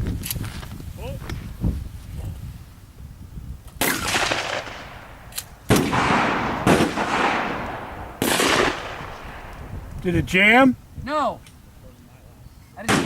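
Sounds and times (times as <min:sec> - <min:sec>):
gunshots echoing: 0:03.8 - 0:09.8.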